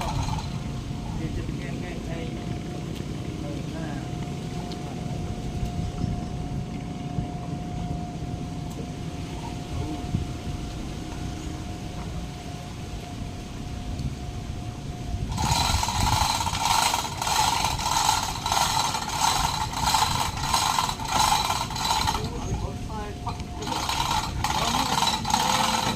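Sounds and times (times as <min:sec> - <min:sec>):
tool scraping boat hull: 0:00.0 - 0:00.7, 0:15.3 - 0:25.9
faint steady whine: 0:00.0 - 0:25.9
low engine rumble: 0:00.0 - 0:25.9.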